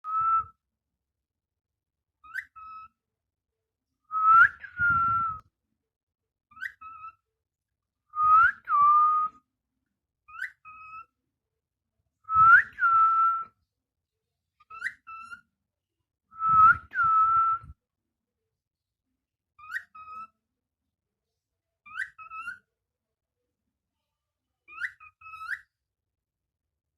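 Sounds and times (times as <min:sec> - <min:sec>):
person whistling: 0:04.4 - 0:05.4.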